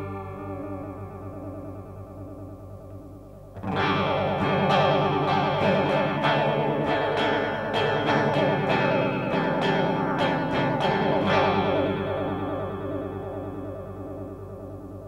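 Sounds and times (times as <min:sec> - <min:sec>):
electric guitar with chorus effect: 0:00.0 - 0:15.0.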